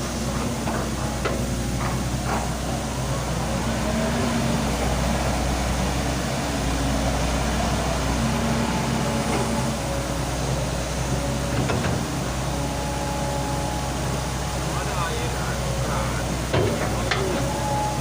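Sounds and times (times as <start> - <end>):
excavator diesel engine running: 0.0 - 18.0.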